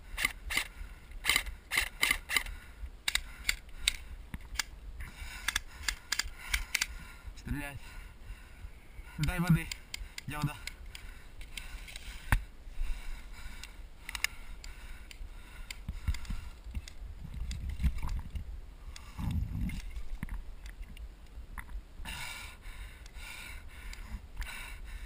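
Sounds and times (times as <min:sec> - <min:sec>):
sharp clicks: 0:00.2 - 0:04.8, 0:05.4 - 0:07.0, 0:09.2 - 0:12.5, 0:13.5 - 0:21.8
low irregular microphone rumbling: 0:10.9 - 0:22.2.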